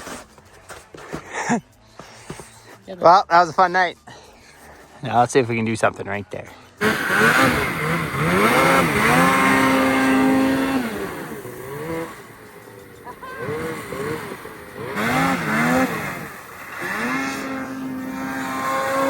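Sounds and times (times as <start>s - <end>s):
snowmobile engine revving: 6.8s - 19.0s.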